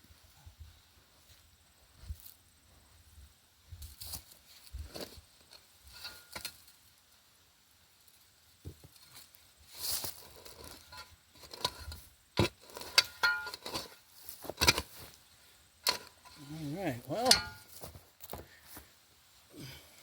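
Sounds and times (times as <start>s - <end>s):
potatoes scraping and rustling: 8.0s - 18.9s.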